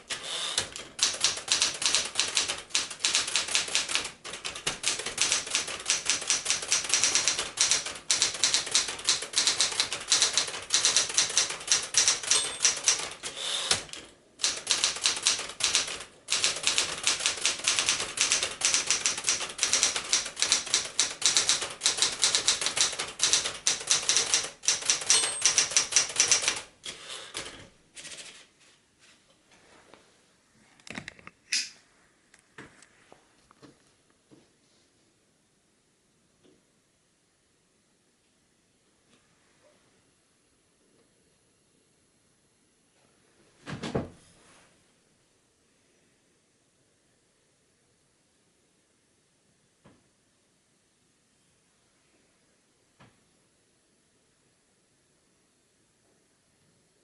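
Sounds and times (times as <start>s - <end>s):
typewriter keystroke clacks: 0.1s - 26.7s, 27.3s - 28.4s.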